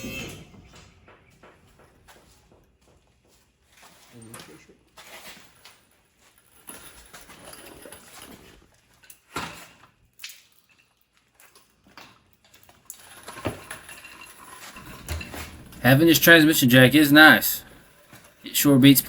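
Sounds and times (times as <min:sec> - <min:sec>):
tools and heavy parts clunking: 0:12.7 - 0:18.4.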